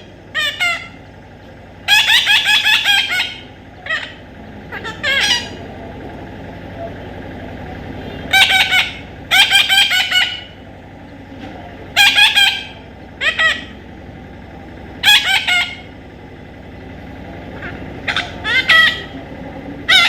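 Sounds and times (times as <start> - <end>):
parrot calling harshly: 0.0 - 1.1, 1.8 - 5.7, 8.2 - 10.6, 11.9 - 13.8, 15.0 - 16.0, 17.6 - 19.2
low background hum: 0.0 - 20.0.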